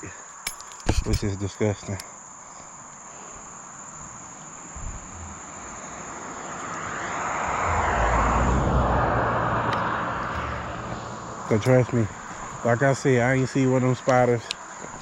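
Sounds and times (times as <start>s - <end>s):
insects trilling: 0.0s - 15.0s
passing engine: 4.8s - 12.8s.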